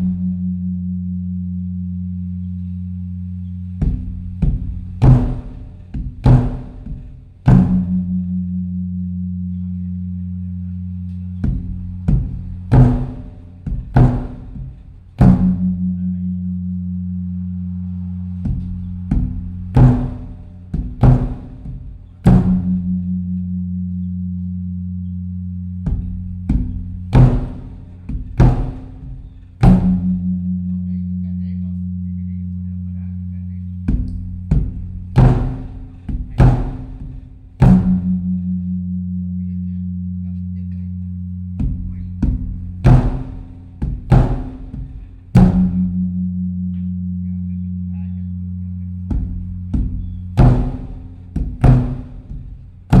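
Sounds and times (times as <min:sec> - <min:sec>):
large drum strikes with low ringing: 0:00.0 - 0:00.8, 0:03.7 - 0:08.7, 0:11.4 - 0:16.9, 0:18.4 - 0:23.6, 0:25.7 - 0:31.2, 0:33.8 - 0:39.1, 0:41.4 - 0:47.0, 0:49.0 - 0:53.0.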